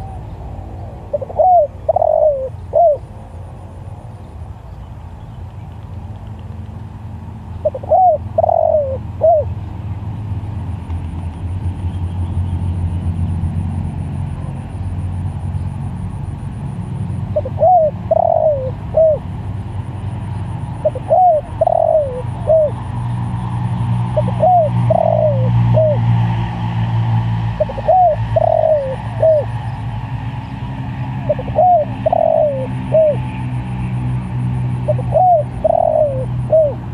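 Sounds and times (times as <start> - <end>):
dove cooing: 0.0 - 3.1, 7.6 - 9.5, 17.3 - 19.3, 20.7 - 23.3, 24.0 - 26.2, 27.6 - 29.6, 31.2 - 33.5, 34.7 - 36.9
steady low hum: 0.0 - 36.9.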